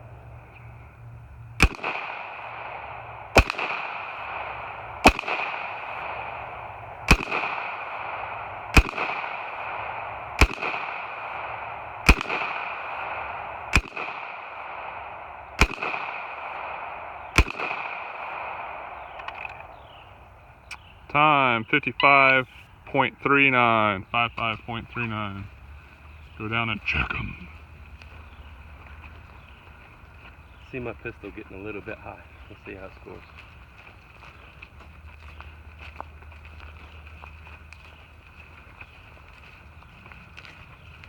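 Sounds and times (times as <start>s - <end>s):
gunshots with echo: 1.6s - 20.1s.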